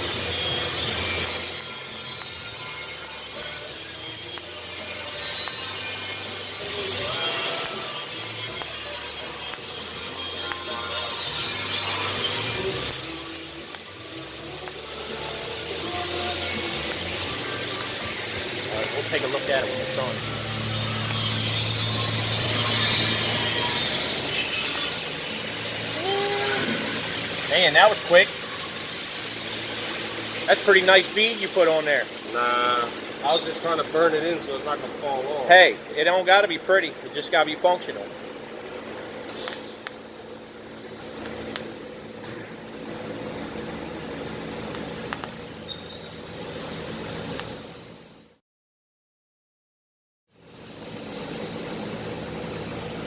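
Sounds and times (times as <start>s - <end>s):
welding arc buzz and hiss: 0.0s - 48.4s, 50.4s - 53.0s
machine humming: 9.2s - 36.0s.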